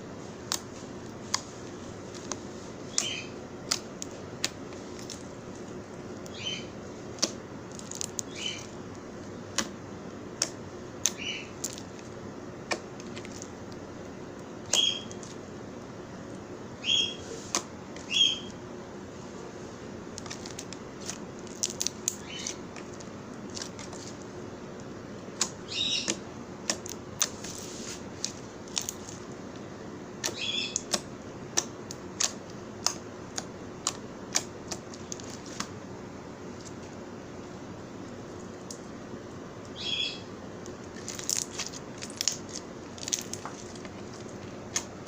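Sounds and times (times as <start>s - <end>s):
slime clicking and crackling: 0.4s - 8.8s, 9.4s - 13.8s, 20.1s - 24.3s, 25.3s - 29.4s, 30.2s - 35.7s, 40.7s - 45.0s
slime popping squelches: 0.4s - 8.8s, 40.8s - 45.0s.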